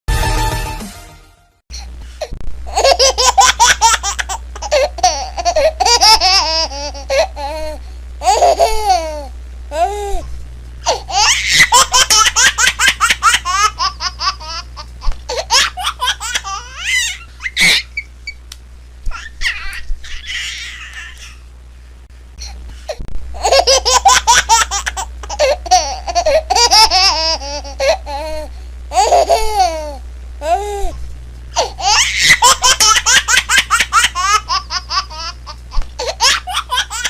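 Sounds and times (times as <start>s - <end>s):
steady low hum: 0.1s - 37.0s
baby laughing: 2.7s - 9.9s, 10.9s - 18.0s, 19.1s - 21.4s, 23.4s - 30.7s, 31.6s - 37.0s.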